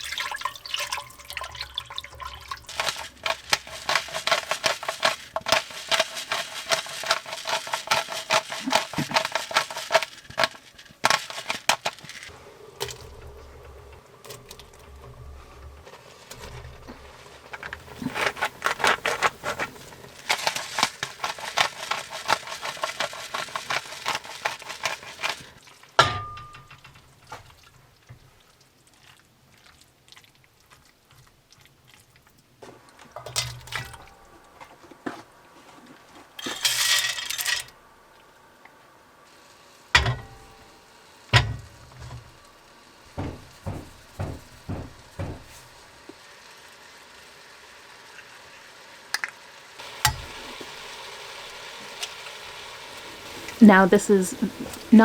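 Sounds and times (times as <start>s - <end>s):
metal cookware clatter: 2.7s - 13.4s, 16.3s - 27.2s, 33.2s - 34.2s, 36.4s - 37.7s, 40.0s - 40.6s, 49.8s - 50.7s
scraping and clicking in a pan: 2.7s - 13.4s, 14.2s - 25.6s, 36.0s - 37.7s
hard knocks: 43.1s - 45.6s
even taps: 43.2s - 45.5s.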